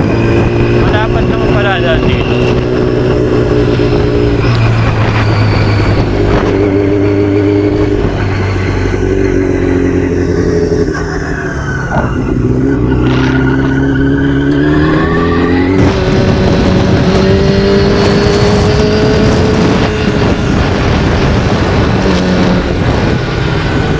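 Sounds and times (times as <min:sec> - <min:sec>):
motorcycle engine revving: 0:00.0 - 0:23.9.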